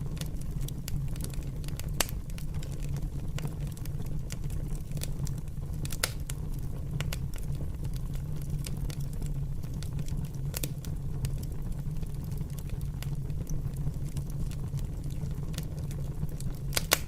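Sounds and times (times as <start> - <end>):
fire crackling: 0.0 - 17.0.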